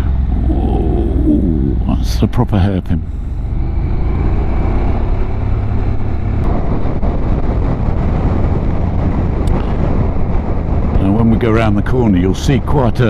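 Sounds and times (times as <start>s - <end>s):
wind noise on microphone: 3.6s - 13.0s.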